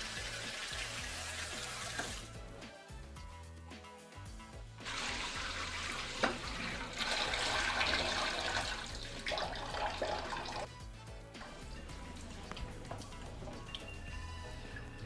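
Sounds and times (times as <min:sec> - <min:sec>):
water rushing from a tap: 0:00.0 - 0:02.3, 0:04.8 - 0:10.7.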